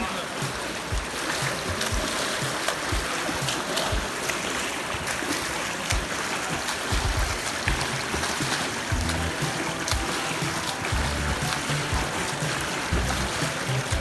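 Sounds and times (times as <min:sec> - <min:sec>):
water rushing and splashing: 0:00.0 - 0:14.0
low thumps: 0:06.9 - 0:14.0.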